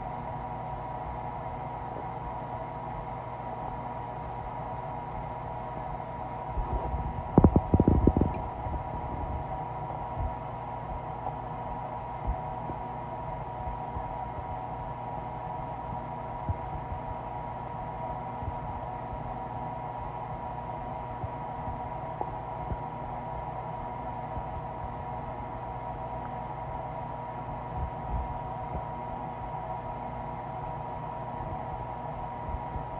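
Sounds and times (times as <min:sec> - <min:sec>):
steady hum: 0:00.0 - 0:32.9
stomach gurgling and growling: 0:06.5 - 0:09.5.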